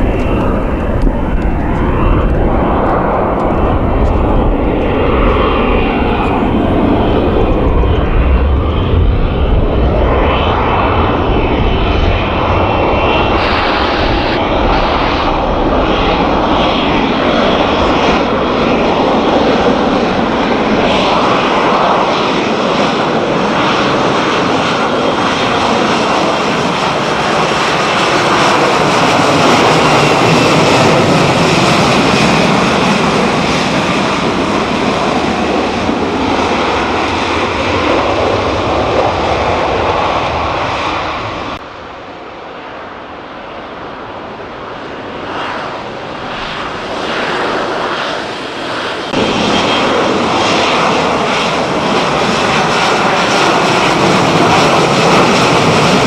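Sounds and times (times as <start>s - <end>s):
fighter jet engine roar: 0.0s - 56.0s.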